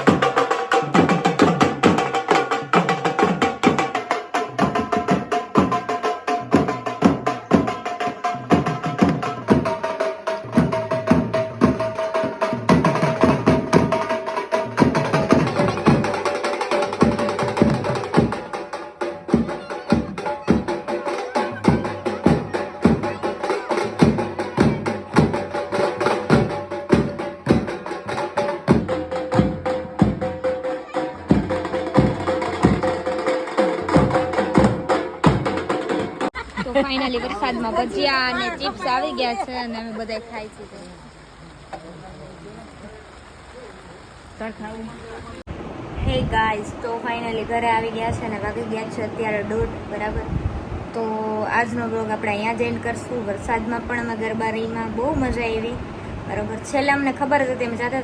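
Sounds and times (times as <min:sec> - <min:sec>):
dhol drum beat: 0:00.0 - 0:40.2.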